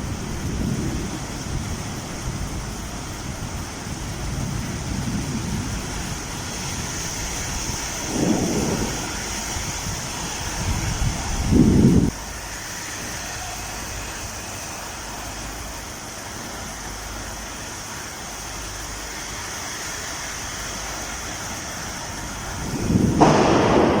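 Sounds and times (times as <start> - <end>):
heavy rain hissing: 0.0 - 24.0
low rumble: 22.6 - 24.0.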